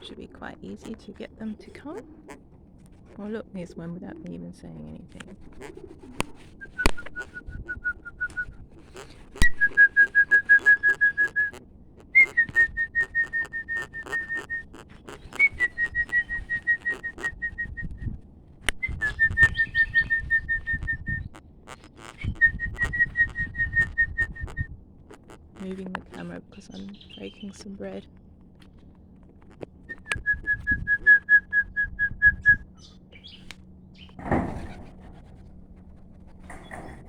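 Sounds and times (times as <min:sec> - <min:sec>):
person whistling short notes: 0:12.2 - 0:14.6, 0:22.2 - 0:24.7.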